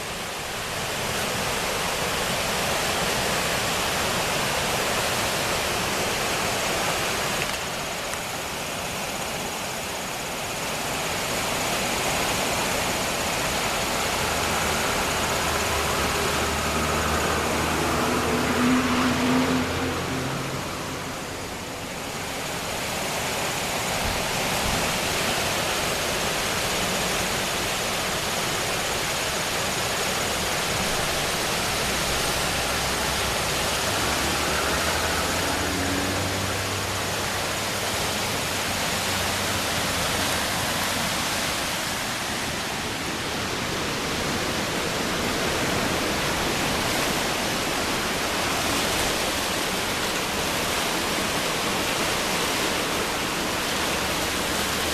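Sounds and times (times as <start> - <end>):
river water rushing: 0.0 - 54.9.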